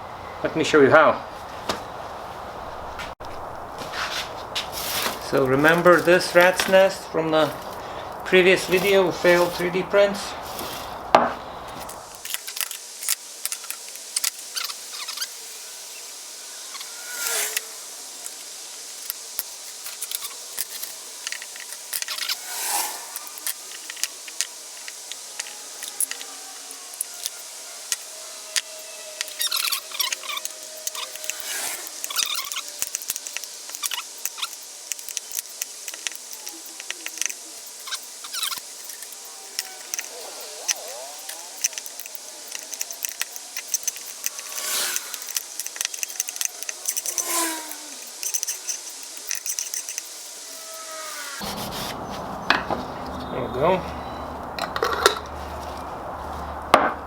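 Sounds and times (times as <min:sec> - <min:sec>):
rustling swishes: 0:22.1 - 0:23.9, 0:43.8 - 0:45.6.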